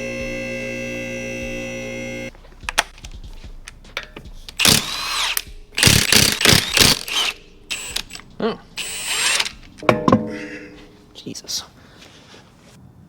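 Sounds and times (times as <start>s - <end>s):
cordless power tool running: 0.0s - 2.3s
steady held tone: 9.8s - 11.2s.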